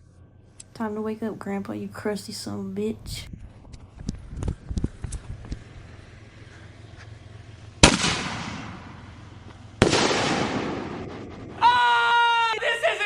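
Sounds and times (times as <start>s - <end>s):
fireworks banging: 3.6s - 11.8s.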